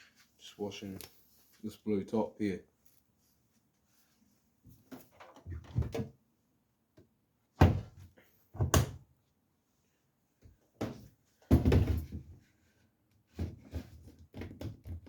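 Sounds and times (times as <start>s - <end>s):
washing machine knocks and bumps: 7.6s - 8.0s, 10.8s - 12.2s.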